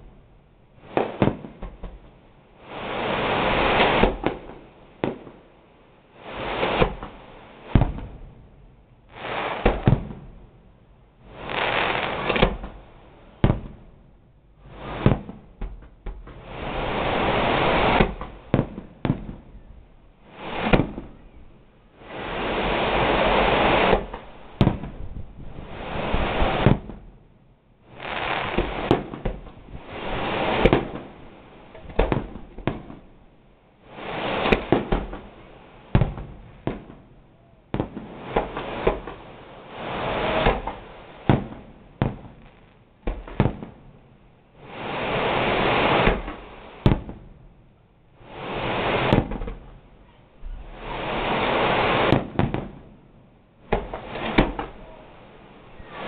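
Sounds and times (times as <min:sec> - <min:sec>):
firework shells bursting: 0:09.1 - 0:10.2, 0:11.3 - 0:12.8, 0:14.7 - 0:19.7, 0:22.0 - 0:25.0, 0:27.9 - 0:33.1, 0:36.0 - 0:43.7, 0:44.7 - 0:47.2, 0:53.7 - 0:55.0
dense rushing noise: 0:16.4 - 0:18.2, 0:22.0 - 0:24.2, 0:29.8 - 0:31.2, 0:39.7 - 0:41.1, 0:50.5 - 0:52.2.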